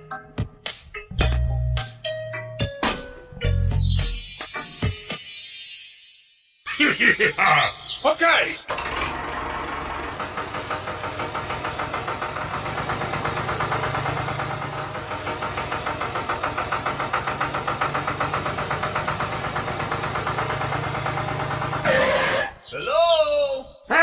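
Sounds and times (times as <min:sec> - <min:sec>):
small engine knocking rhythmically: 0:08.7 - 0:21.9.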